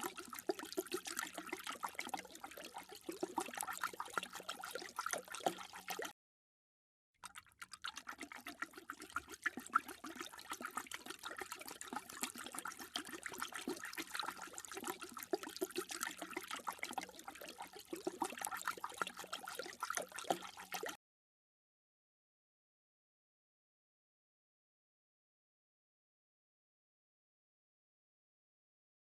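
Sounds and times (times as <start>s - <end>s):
dog lapping water: 0.0s - 6.1s, 7.2s - 21.0s.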